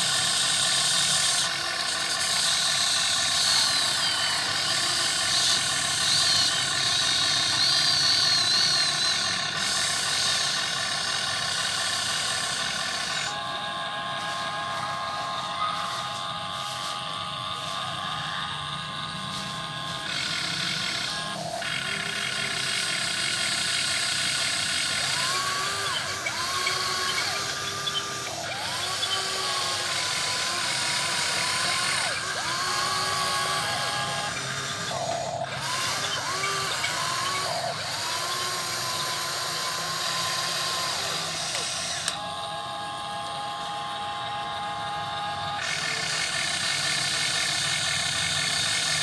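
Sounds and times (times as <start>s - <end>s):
electric motors whining: 0.0s - 49.0s
steady mechanical hum: 0.0s - 49.0s.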